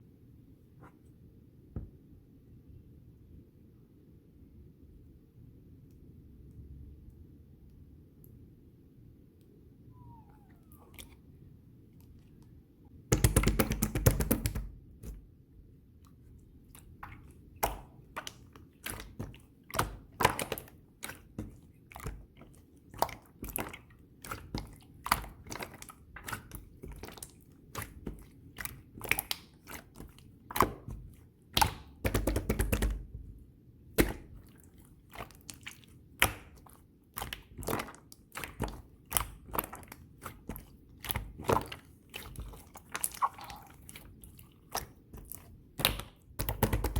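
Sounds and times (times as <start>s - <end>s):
slime clicking and popping: 31.6s - 33.0s, 44.7s - 46.9s.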